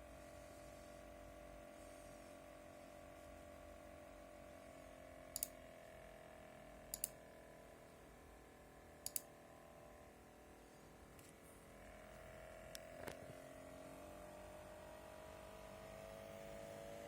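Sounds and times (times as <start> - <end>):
faint steady hum: 0.0 - 17.0
sharp double clicks: 6.9 - 7.2, 9.0 - 9.3.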